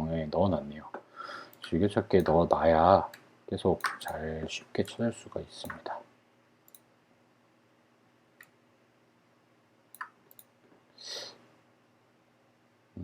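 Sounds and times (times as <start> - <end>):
low steady hum: 0.0 - 13.0
soft hiss: 0.0 - 13.0
faint computer mouse clicks: 9.9 - 10.5.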